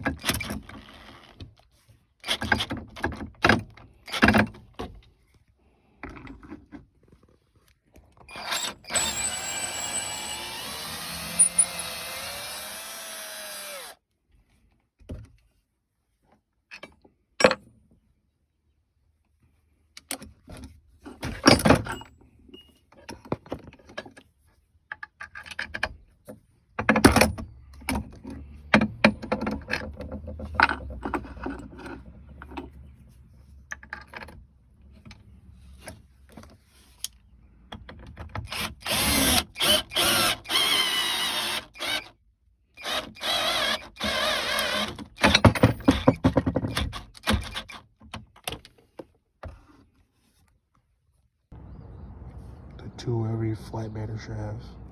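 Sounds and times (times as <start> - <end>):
cordless drill running: 8.3 - 14.0, 38.5 - 42.1, 42.8 - 45.0.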